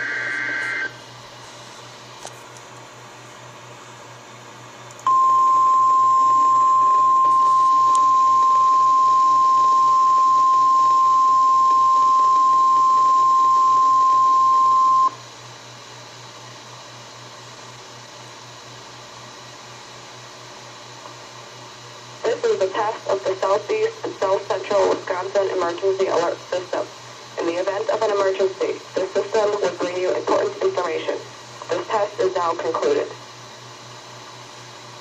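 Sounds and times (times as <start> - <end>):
emergency alert tone: 0.0 - 0.9, 5.1 - 15.2
low hum: 5.1 - 15.1
radio hiss: 22.2 - 33.2.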